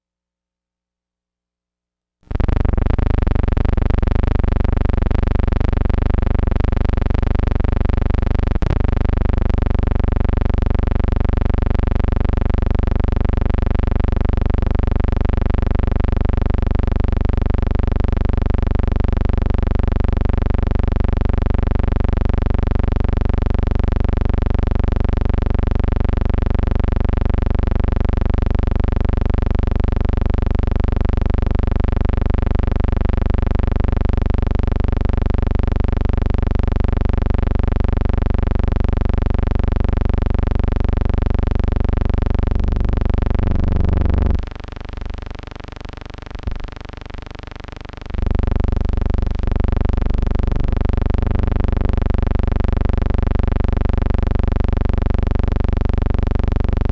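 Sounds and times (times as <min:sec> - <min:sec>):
loud steady droning hum: 0:42.0 - 0:52.2.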